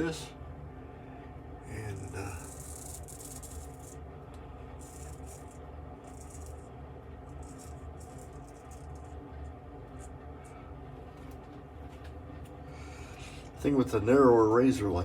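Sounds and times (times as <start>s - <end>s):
razor scraping whiskers: 1.9s - 4.0s, 4.8s - 6.6s.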